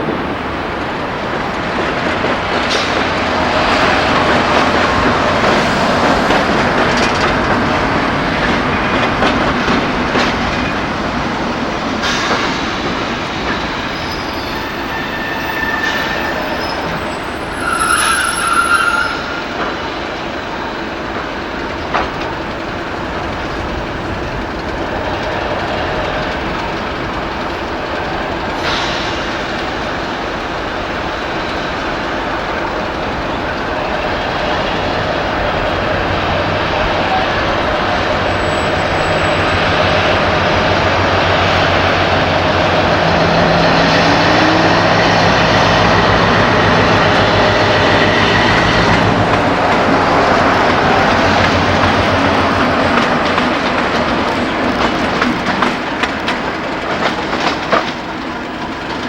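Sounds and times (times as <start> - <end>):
freight train wagons rattling: 0.0 - 59.0
high wheel squeal: 13.5 - 20.8.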